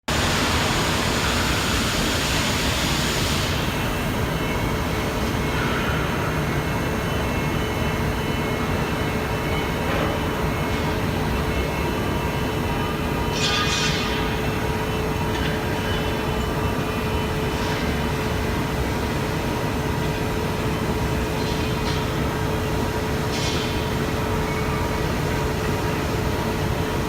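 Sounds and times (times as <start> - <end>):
hiss: 0.1 - 3.8
machine mechanical hum: 0.1 - 27.0.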